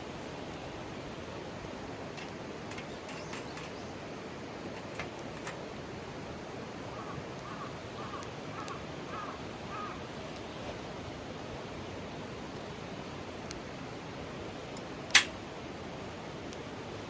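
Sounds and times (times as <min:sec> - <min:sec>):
mountain stream rushing: 0:00.0 - 0:17.0
bird calling: 0:06.9 - 0:10.1.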